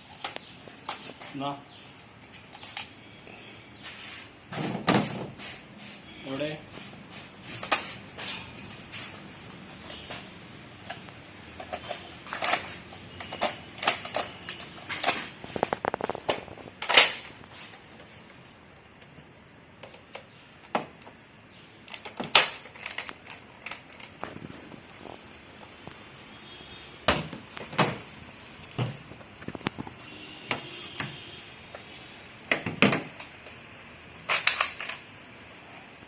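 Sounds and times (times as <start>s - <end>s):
plastic parts clicking: 10.0s - 17.3s, 21.8s - 24.8s, 34.2s - 35.1s.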